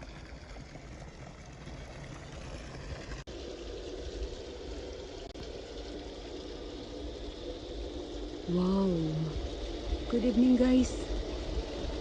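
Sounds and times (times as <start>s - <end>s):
water pouring into bath: 0.0s - 8.5s.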